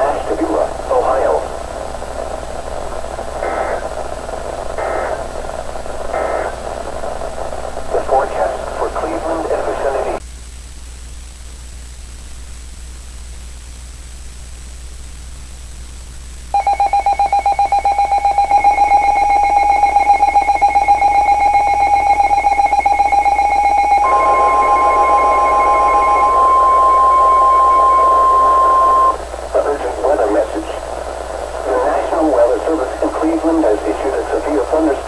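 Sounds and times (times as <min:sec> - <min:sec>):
radio static hiss: 0:00.0 - 0:10.2, 0:18.4 - 0:35.0
pulsing two-tone alert signal: 0:16.6 - 0:29.2
steady alert tone: 0:17.8 - 0:29.4.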